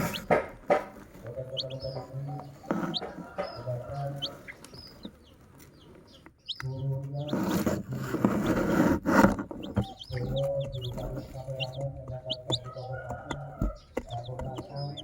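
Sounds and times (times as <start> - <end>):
chicks peeping: 0.0 - 15.0
sharp taps: 8.2 - 15.0.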